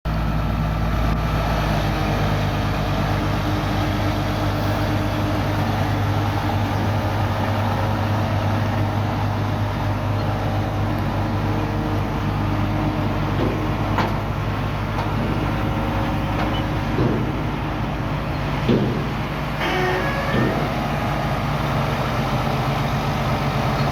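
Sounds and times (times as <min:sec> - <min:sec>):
diesel engine running: 0:00.0 - 0:23.9
short knocks: 0:16.4 - 0:17.4, 0:18.6 - 0:20.8.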